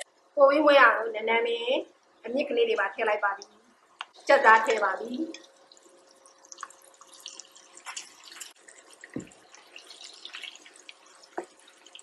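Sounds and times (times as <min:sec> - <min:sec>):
hot oil crackling in a pan: 0:04.2 - 0:12.0.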